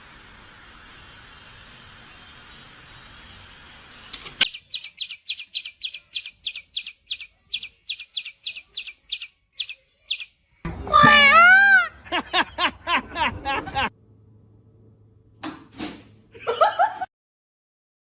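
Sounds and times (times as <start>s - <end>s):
bird chirping: 4.4s - 10.6s
bird calls rising and falling: 4.4s - 11.8s.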